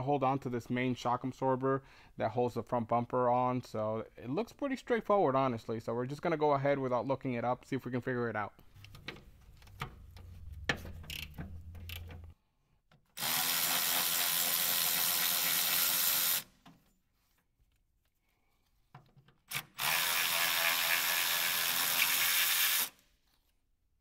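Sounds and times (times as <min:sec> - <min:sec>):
power drill running: 0:13.2 - 0:16.5, 0:19.5 - 0:23.0.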